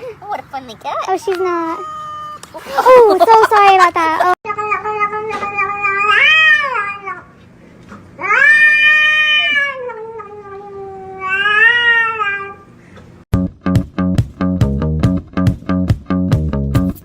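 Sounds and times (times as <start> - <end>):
cat meowing: 1.6 - 2.4, 5.3 - 7.2, 8.2 - 12.6
music: 13.4 - 17.0.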